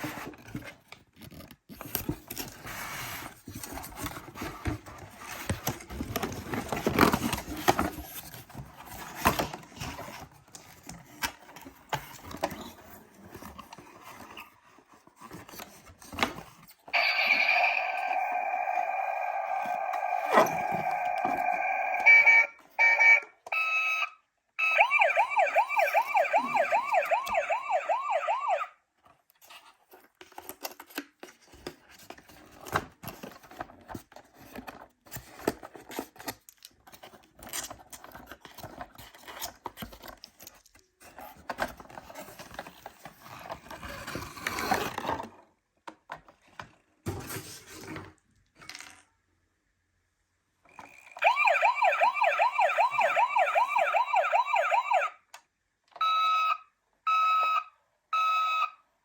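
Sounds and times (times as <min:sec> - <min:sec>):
toy electronic siren: 0:17.0 - 0:28.7, 0:51.0 - 0:55.2.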